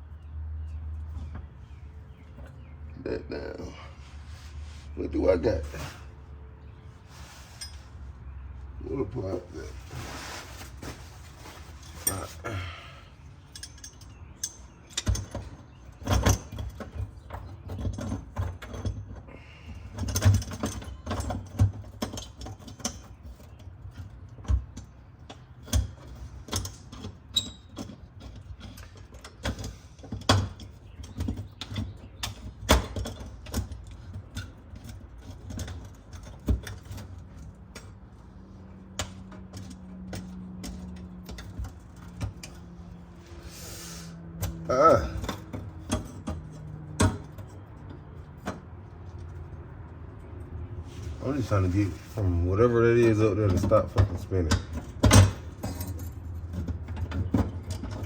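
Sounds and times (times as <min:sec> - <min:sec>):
hand tools clinking on metal: 0:11.5 - 0:24.2, 0:51.2 - 0:58.0.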